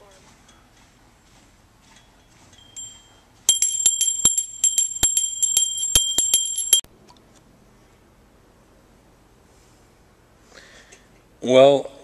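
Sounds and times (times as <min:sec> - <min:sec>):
faint bell ding: 0:02.0 - 0:06.8
handbell rung rapidly: 0:02.6 - 0:06.8.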